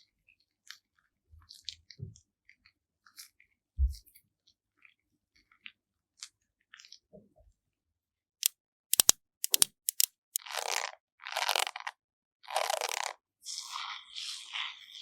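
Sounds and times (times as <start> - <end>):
sharp clicks: 8.9 - 10.1.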